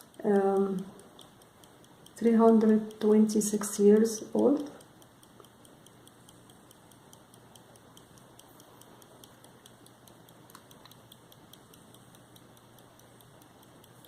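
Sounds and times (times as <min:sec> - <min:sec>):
pocket watch ticking: 0:00.0 - 0:14.0.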